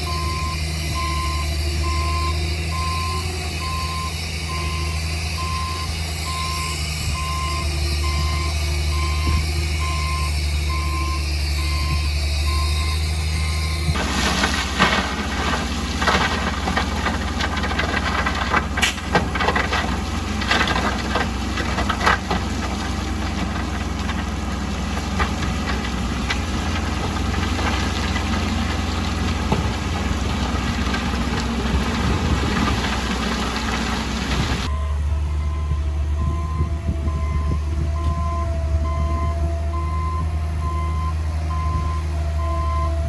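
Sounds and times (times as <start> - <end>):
diesel engine running: 0.0 - 43.0
metallic clanks and rattles: 14.0 - 34.7.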